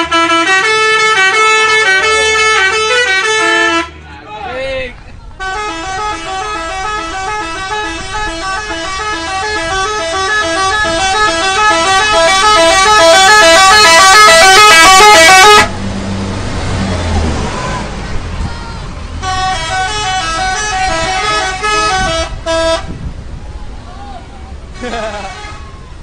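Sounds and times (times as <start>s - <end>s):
musical bus horn melody: 0.0s - 4.0s, 5.4s - 15.8s, 19.2s - 23.0s, 24.7s - 25.8s
low vehicle rumble: 0.0s - 26.0s.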